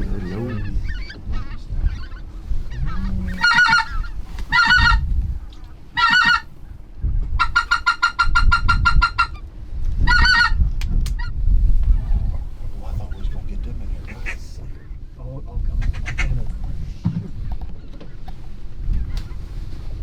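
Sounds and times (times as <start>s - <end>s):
wind rumble: 0.0s - 20.0s
duck call quacking: 2.1s - 5.0s, 6.0s - 6.5s.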